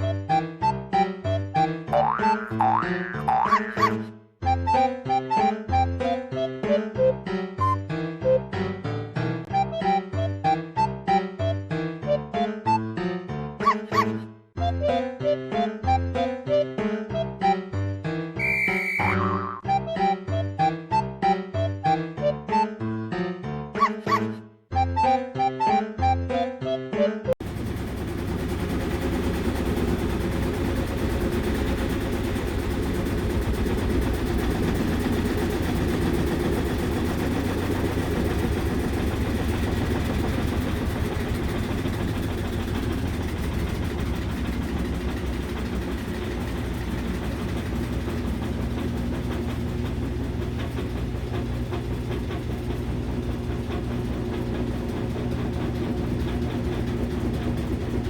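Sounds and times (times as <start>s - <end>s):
washing machine running: 0.0s - 6.5s, 27.4s - 58.0s.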